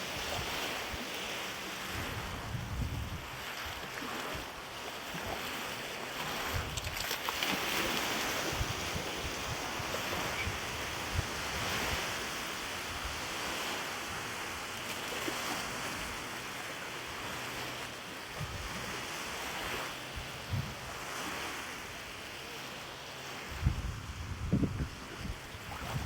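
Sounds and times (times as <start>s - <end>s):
small waves washing in: 0.0s - 26.0s
wind blowing: 1.8s - 4.5s, 6.3s - 22.1s, 23.4s - 26.0s
wind gusts buffeting microphone: 1.9s - 3.8s, 6.4s - 14.7s, 19.6s - 21.1s, 23.4s - 26.0s.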